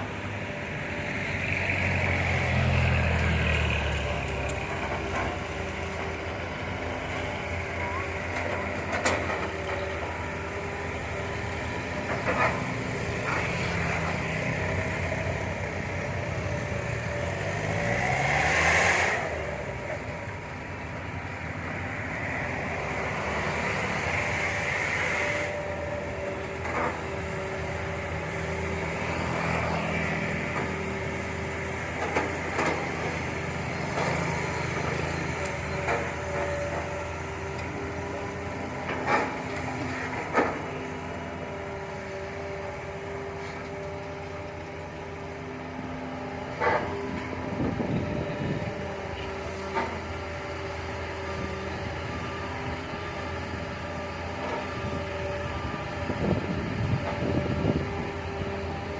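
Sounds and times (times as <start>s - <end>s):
excavator diesel engine running: 0.0s - 58.9s.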